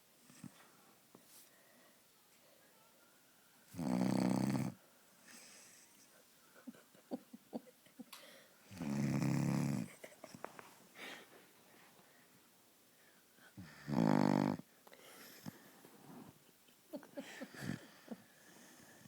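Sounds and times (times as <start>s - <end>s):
loud snores: 3.8s - 4.8s, 8.7s - 9.9s, 13.6s - 14.6s.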